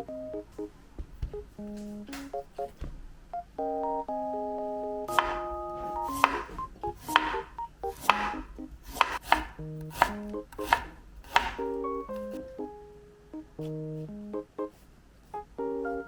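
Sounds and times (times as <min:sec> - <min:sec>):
light background music: 0:00.0 - 0:16.0
knife chopping on cutting board: 0:05.1 - 0:12.4.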